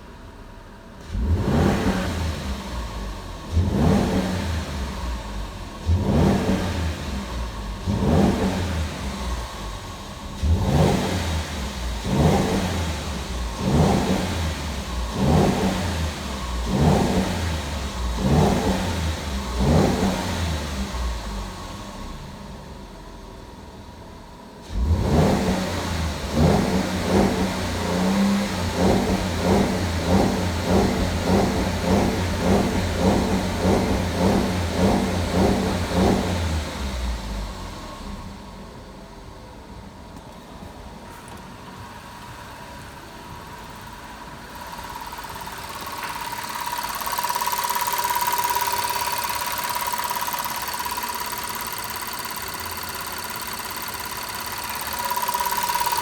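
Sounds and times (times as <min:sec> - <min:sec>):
car engine rhythmic crackle: 0:40.0 - 0:56.0.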